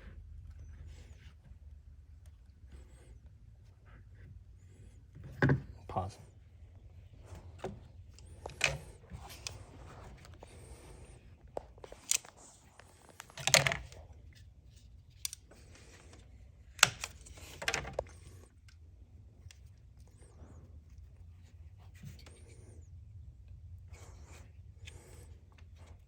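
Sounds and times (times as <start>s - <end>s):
plastic and metal parts rattling: 7.2s - 14.4s, 16.8s - 18.4s.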